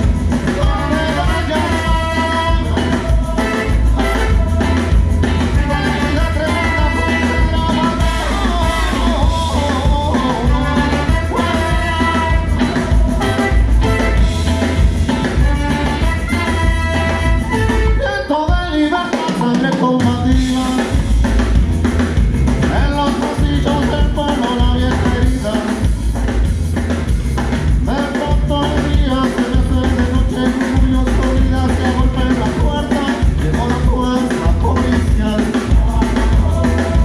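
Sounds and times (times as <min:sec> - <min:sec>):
live band playing: 0:00.0 - 0:37.0
singing: 0:00.4 - 0:14.5, 0:27.9 - 0:37.0.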